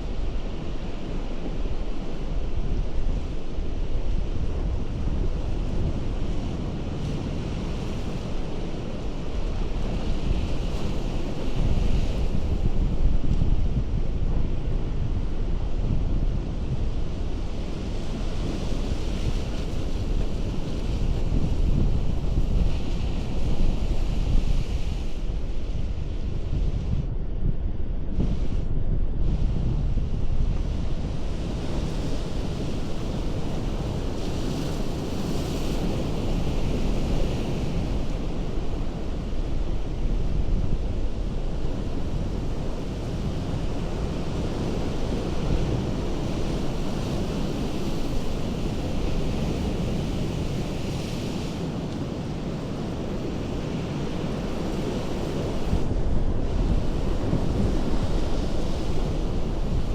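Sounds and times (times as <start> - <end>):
wind buffeting microphone: 0.0 - 59.9
surf rumbling on rocks: 29.2 - 59.9.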